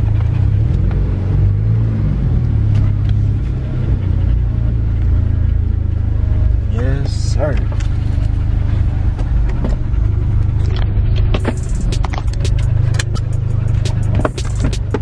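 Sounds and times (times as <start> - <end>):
car engine low rumble: 0.0 - 15.0
sharp irregular clicks and ticks: 10.6 - 15.0.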